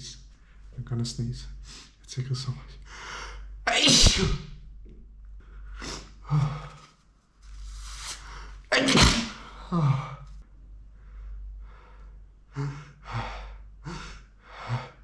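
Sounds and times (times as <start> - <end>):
man sneezing: 3.7 - 4.5, 8.7 - 10.2.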